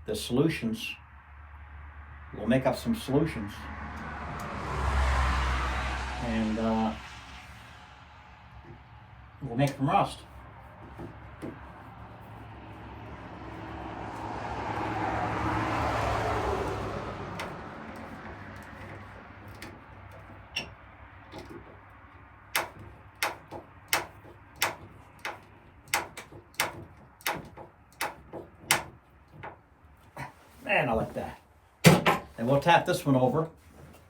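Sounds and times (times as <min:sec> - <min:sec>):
hammer tapping on metal: 0:22.5 - 0:29.6.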